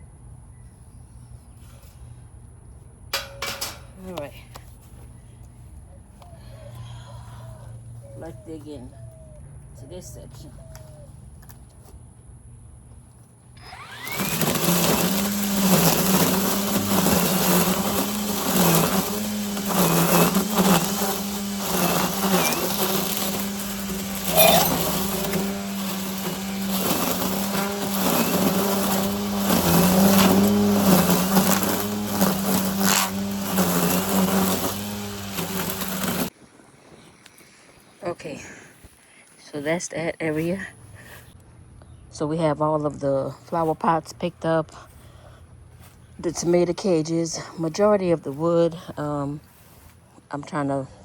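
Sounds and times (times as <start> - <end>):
string trimmer motor: 13.6 - 36.3
trimmer line slapping grass: 13.6 - 36.3.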